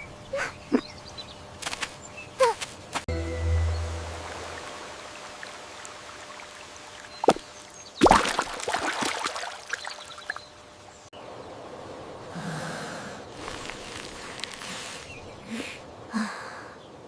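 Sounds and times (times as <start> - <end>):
water plop: 7.2 - 7.4, 8.0 - 10.1
water pouring and splashing: 8.0 - 10.4, 13.3 - 15.3.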